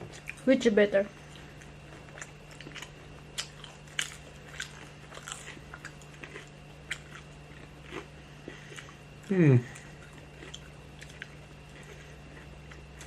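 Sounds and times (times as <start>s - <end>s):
person chewing crunchy food: 0.0s - 0.4s, 1.1s - 13.0s
faint steady hum: 0.0s - 13.0s.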